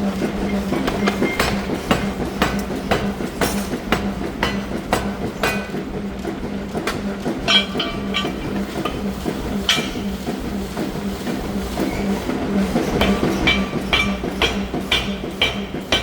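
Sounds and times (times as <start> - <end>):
steady machine hum: 0.0 - 16.0
hammer blows on hot steel: 6.9 - 10.2, 12.9 - 16.0
ringing metal clang: 7.5 - 8.6, 13.0 - 14.6.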